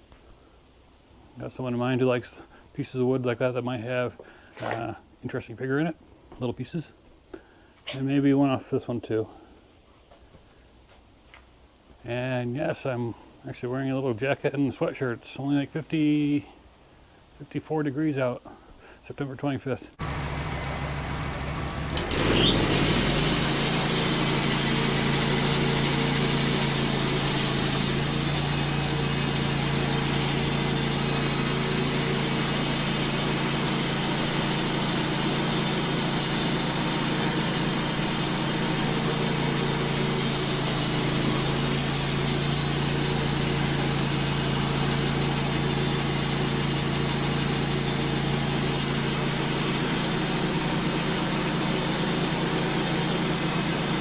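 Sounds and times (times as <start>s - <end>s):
band sawmill cutting a log: 20.0s - 54.0s.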